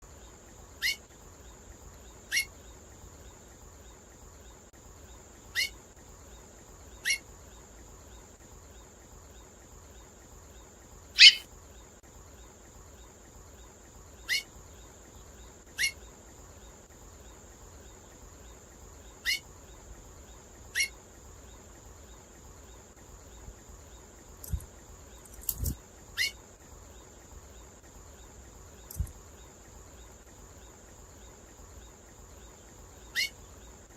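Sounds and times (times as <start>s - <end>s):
finch call notes: 11.2s - 11.4s.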